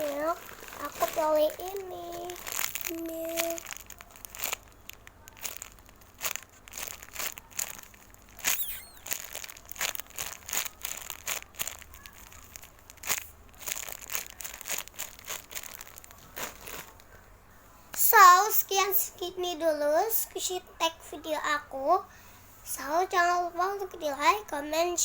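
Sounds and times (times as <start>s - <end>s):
thin plastic crinkling: 0.0s - 18.1s.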